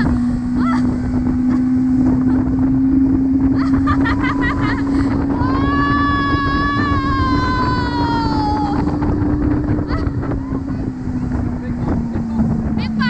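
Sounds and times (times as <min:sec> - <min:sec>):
motorboat engine running: 0:00.0 - 0:13.0
water rushing: 0:00.0 - 0:13.0
wind buffeting microphone: 0:00.0 - 0:13.0.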